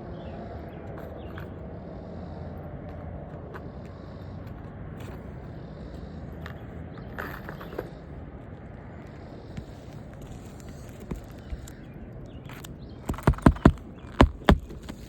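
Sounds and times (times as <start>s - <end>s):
shingle scraping: 9.0s - 15.0s
light clicks and knocks: 9.1s - 15.0s.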